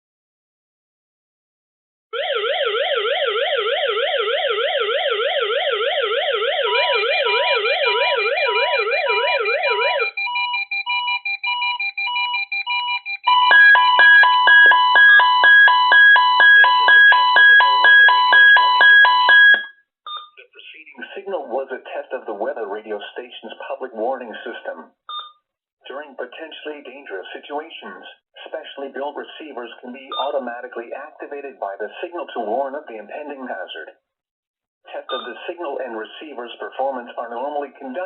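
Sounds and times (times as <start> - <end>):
fast warbling siren tone: 2.2 - 19.7
loud multi-tone beeping: 6.3 - 20.4, 35.1 - 35.4
steady beeping: 6.8 - 20.3.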